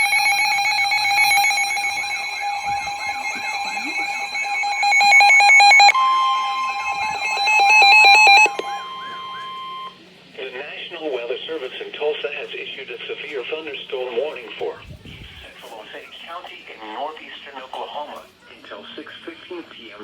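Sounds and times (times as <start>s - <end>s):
steady alert tone: 0.0s - 9.9s
warbling alert tone: 0.0s - 9.9s
higher steady tone: 0.0s - 10.0s
rapid beeping: 0.0s - 10.0s.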